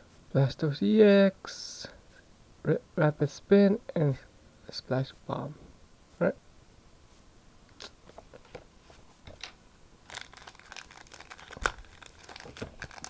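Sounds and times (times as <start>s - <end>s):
crinkly packaging rustling: 10.0s - 13.0s.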